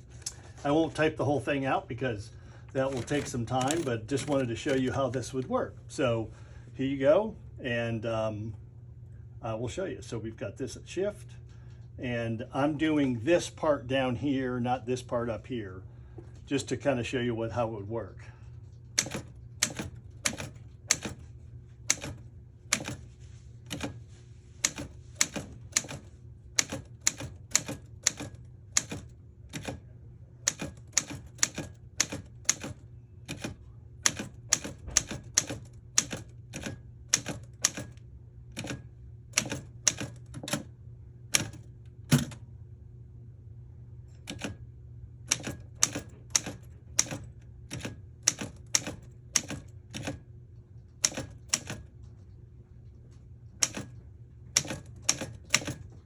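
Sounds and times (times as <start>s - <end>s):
low steady hum: 0.0s - 56.0s
typewriter key strikes: 2.8s - 5.0s, 19.0s - 21.3s, 21.9s - 23.0s, 23.7s - 24.0s, 24.6s - 29.8s, 30.5s - 38.0s, 38.6s - 38.8s, 39.4s - 40.7s, 41.3s - 42.4s, 44.2s - 44.6s, 45.3s - 50.2s, 51.0s - 51.9s, 53.6s - 54.0s, 54.6s - 56.0s.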